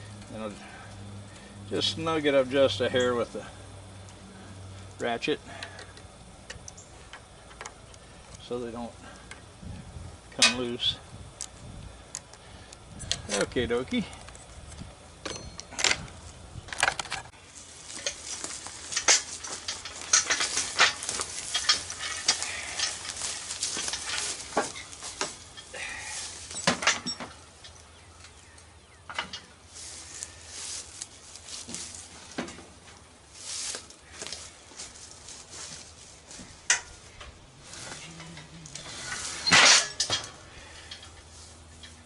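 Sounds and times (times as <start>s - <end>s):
metal tools clinking and scraping: 10.4s - 10.9s, 13.0s - 28.4s, 29.1s - 32.6s, 33.5s - 42.0s.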